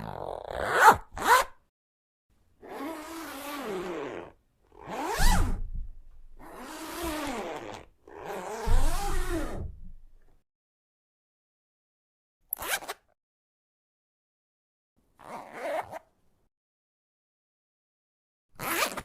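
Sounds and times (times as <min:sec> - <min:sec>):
zipper being pulled: 0:00.0 - 0:01.6, 0:02.6 - 0:10.0, 0:12.5 - 0:13.2, 0:15.2 - 0:16.1, 0:18.6 - 0:19.0.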